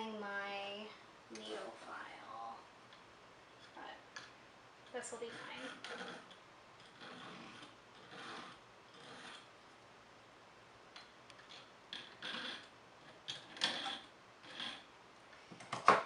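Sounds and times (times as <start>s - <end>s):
file scraping metal: 5.1s - 9.5s, 11.5s - 12.7s, 13.4s - 14.9s.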